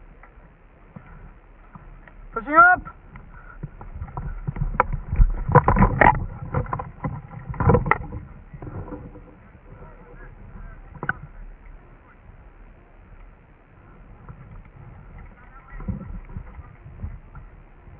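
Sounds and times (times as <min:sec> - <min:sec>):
low rumble: 0:00.0 - 0:17.9
irregular knocks and thuds: 0:03.0 - 0:11.4.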